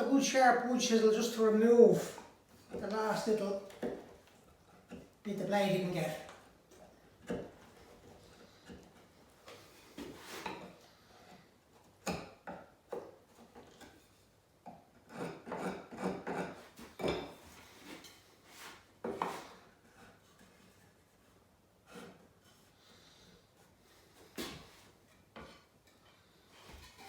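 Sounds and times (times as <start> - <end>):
chisel scraping wood: 14.9 - 27.0.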